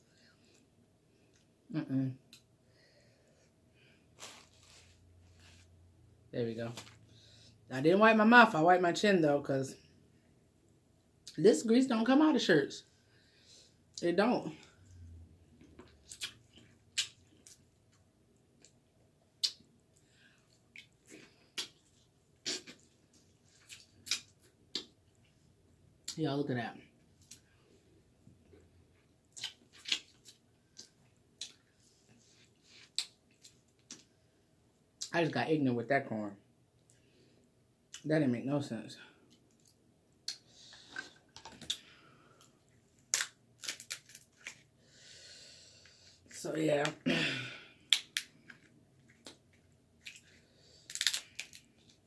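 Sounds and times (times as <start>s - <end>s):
quiet chewing: 47.9s - 52.0s.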